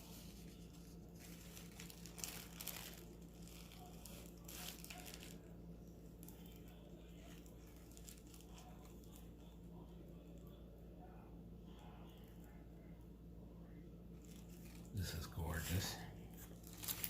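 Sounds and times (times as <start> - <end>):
faint steady hum: 0.0 - 17.0
packaging crinkling: 0.3 - 5.5, 6.2 - 9.5, 16.4 - 17.0.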